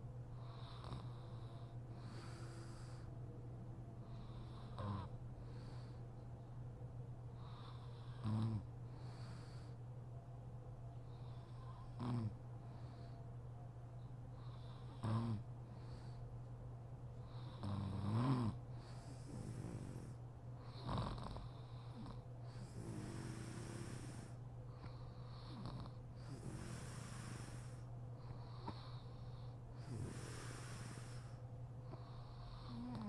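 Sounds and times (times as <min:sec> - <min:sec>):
hissy breaths: 0:00.3 - 0:03.3, 0:04.0 - 0:06.6, 0:08.8 - 0:10.0, 0:15.6 - 0:16.5, 0:18.7 - 0:33.0
woman snoring: 0:04.2 - 0:05.1, 0:17.5 - 0:20.1, 0:20.7 - 0:24.3, 0:25.5 - 0:27.8, 0:29.8 - 0:31.3, 0:32.3 - 0:33.0.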